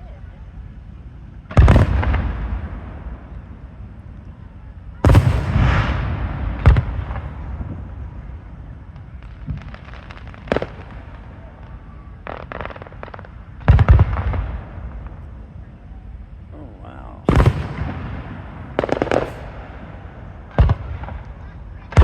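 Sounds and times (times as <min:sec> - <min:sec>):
fireworks booming: 0:01.5 - 0:03.9, 0:05.0 - 0:22.0
fireworks crackling: 0:05.0 - 0:22.0.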